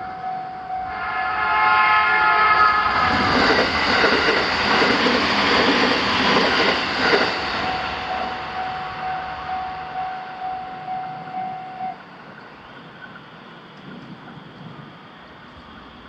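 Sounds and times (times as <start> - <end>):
level crossing warning alarm: 0.0 - 12.2.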